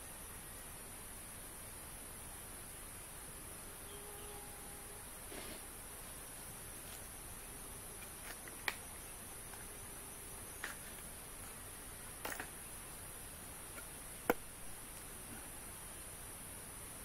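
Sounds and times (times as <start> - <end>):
high-pitched insect drone: 2.6 - 14.1.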